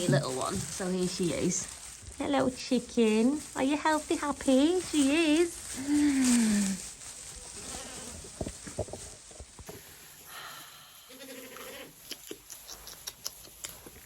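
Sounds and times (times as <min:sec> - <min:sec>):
lamb bleating: 0:07.6 - 0:08.2, 0:11.0 - 0:12.0.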